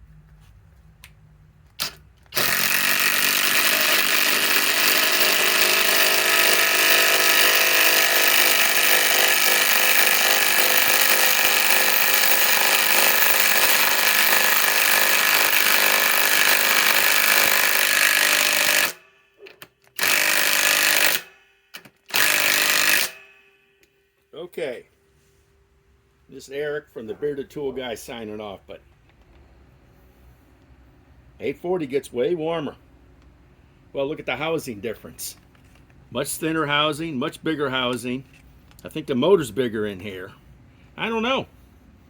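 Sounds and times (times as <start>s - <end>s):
impact driver hammering screw into wood: 1.8s - 19.0s, 20.0s - 23.4s.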